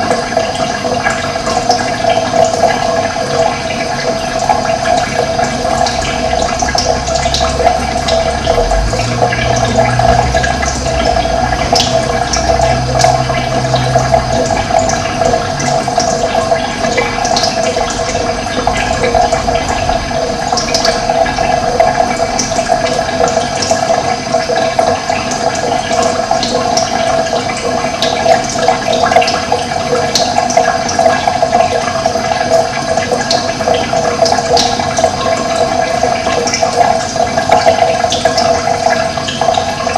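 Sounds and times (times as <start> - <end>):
running water: 0.0 - 39.9
low rumble: 6.9 - 15.6, 17.9 - 23.2.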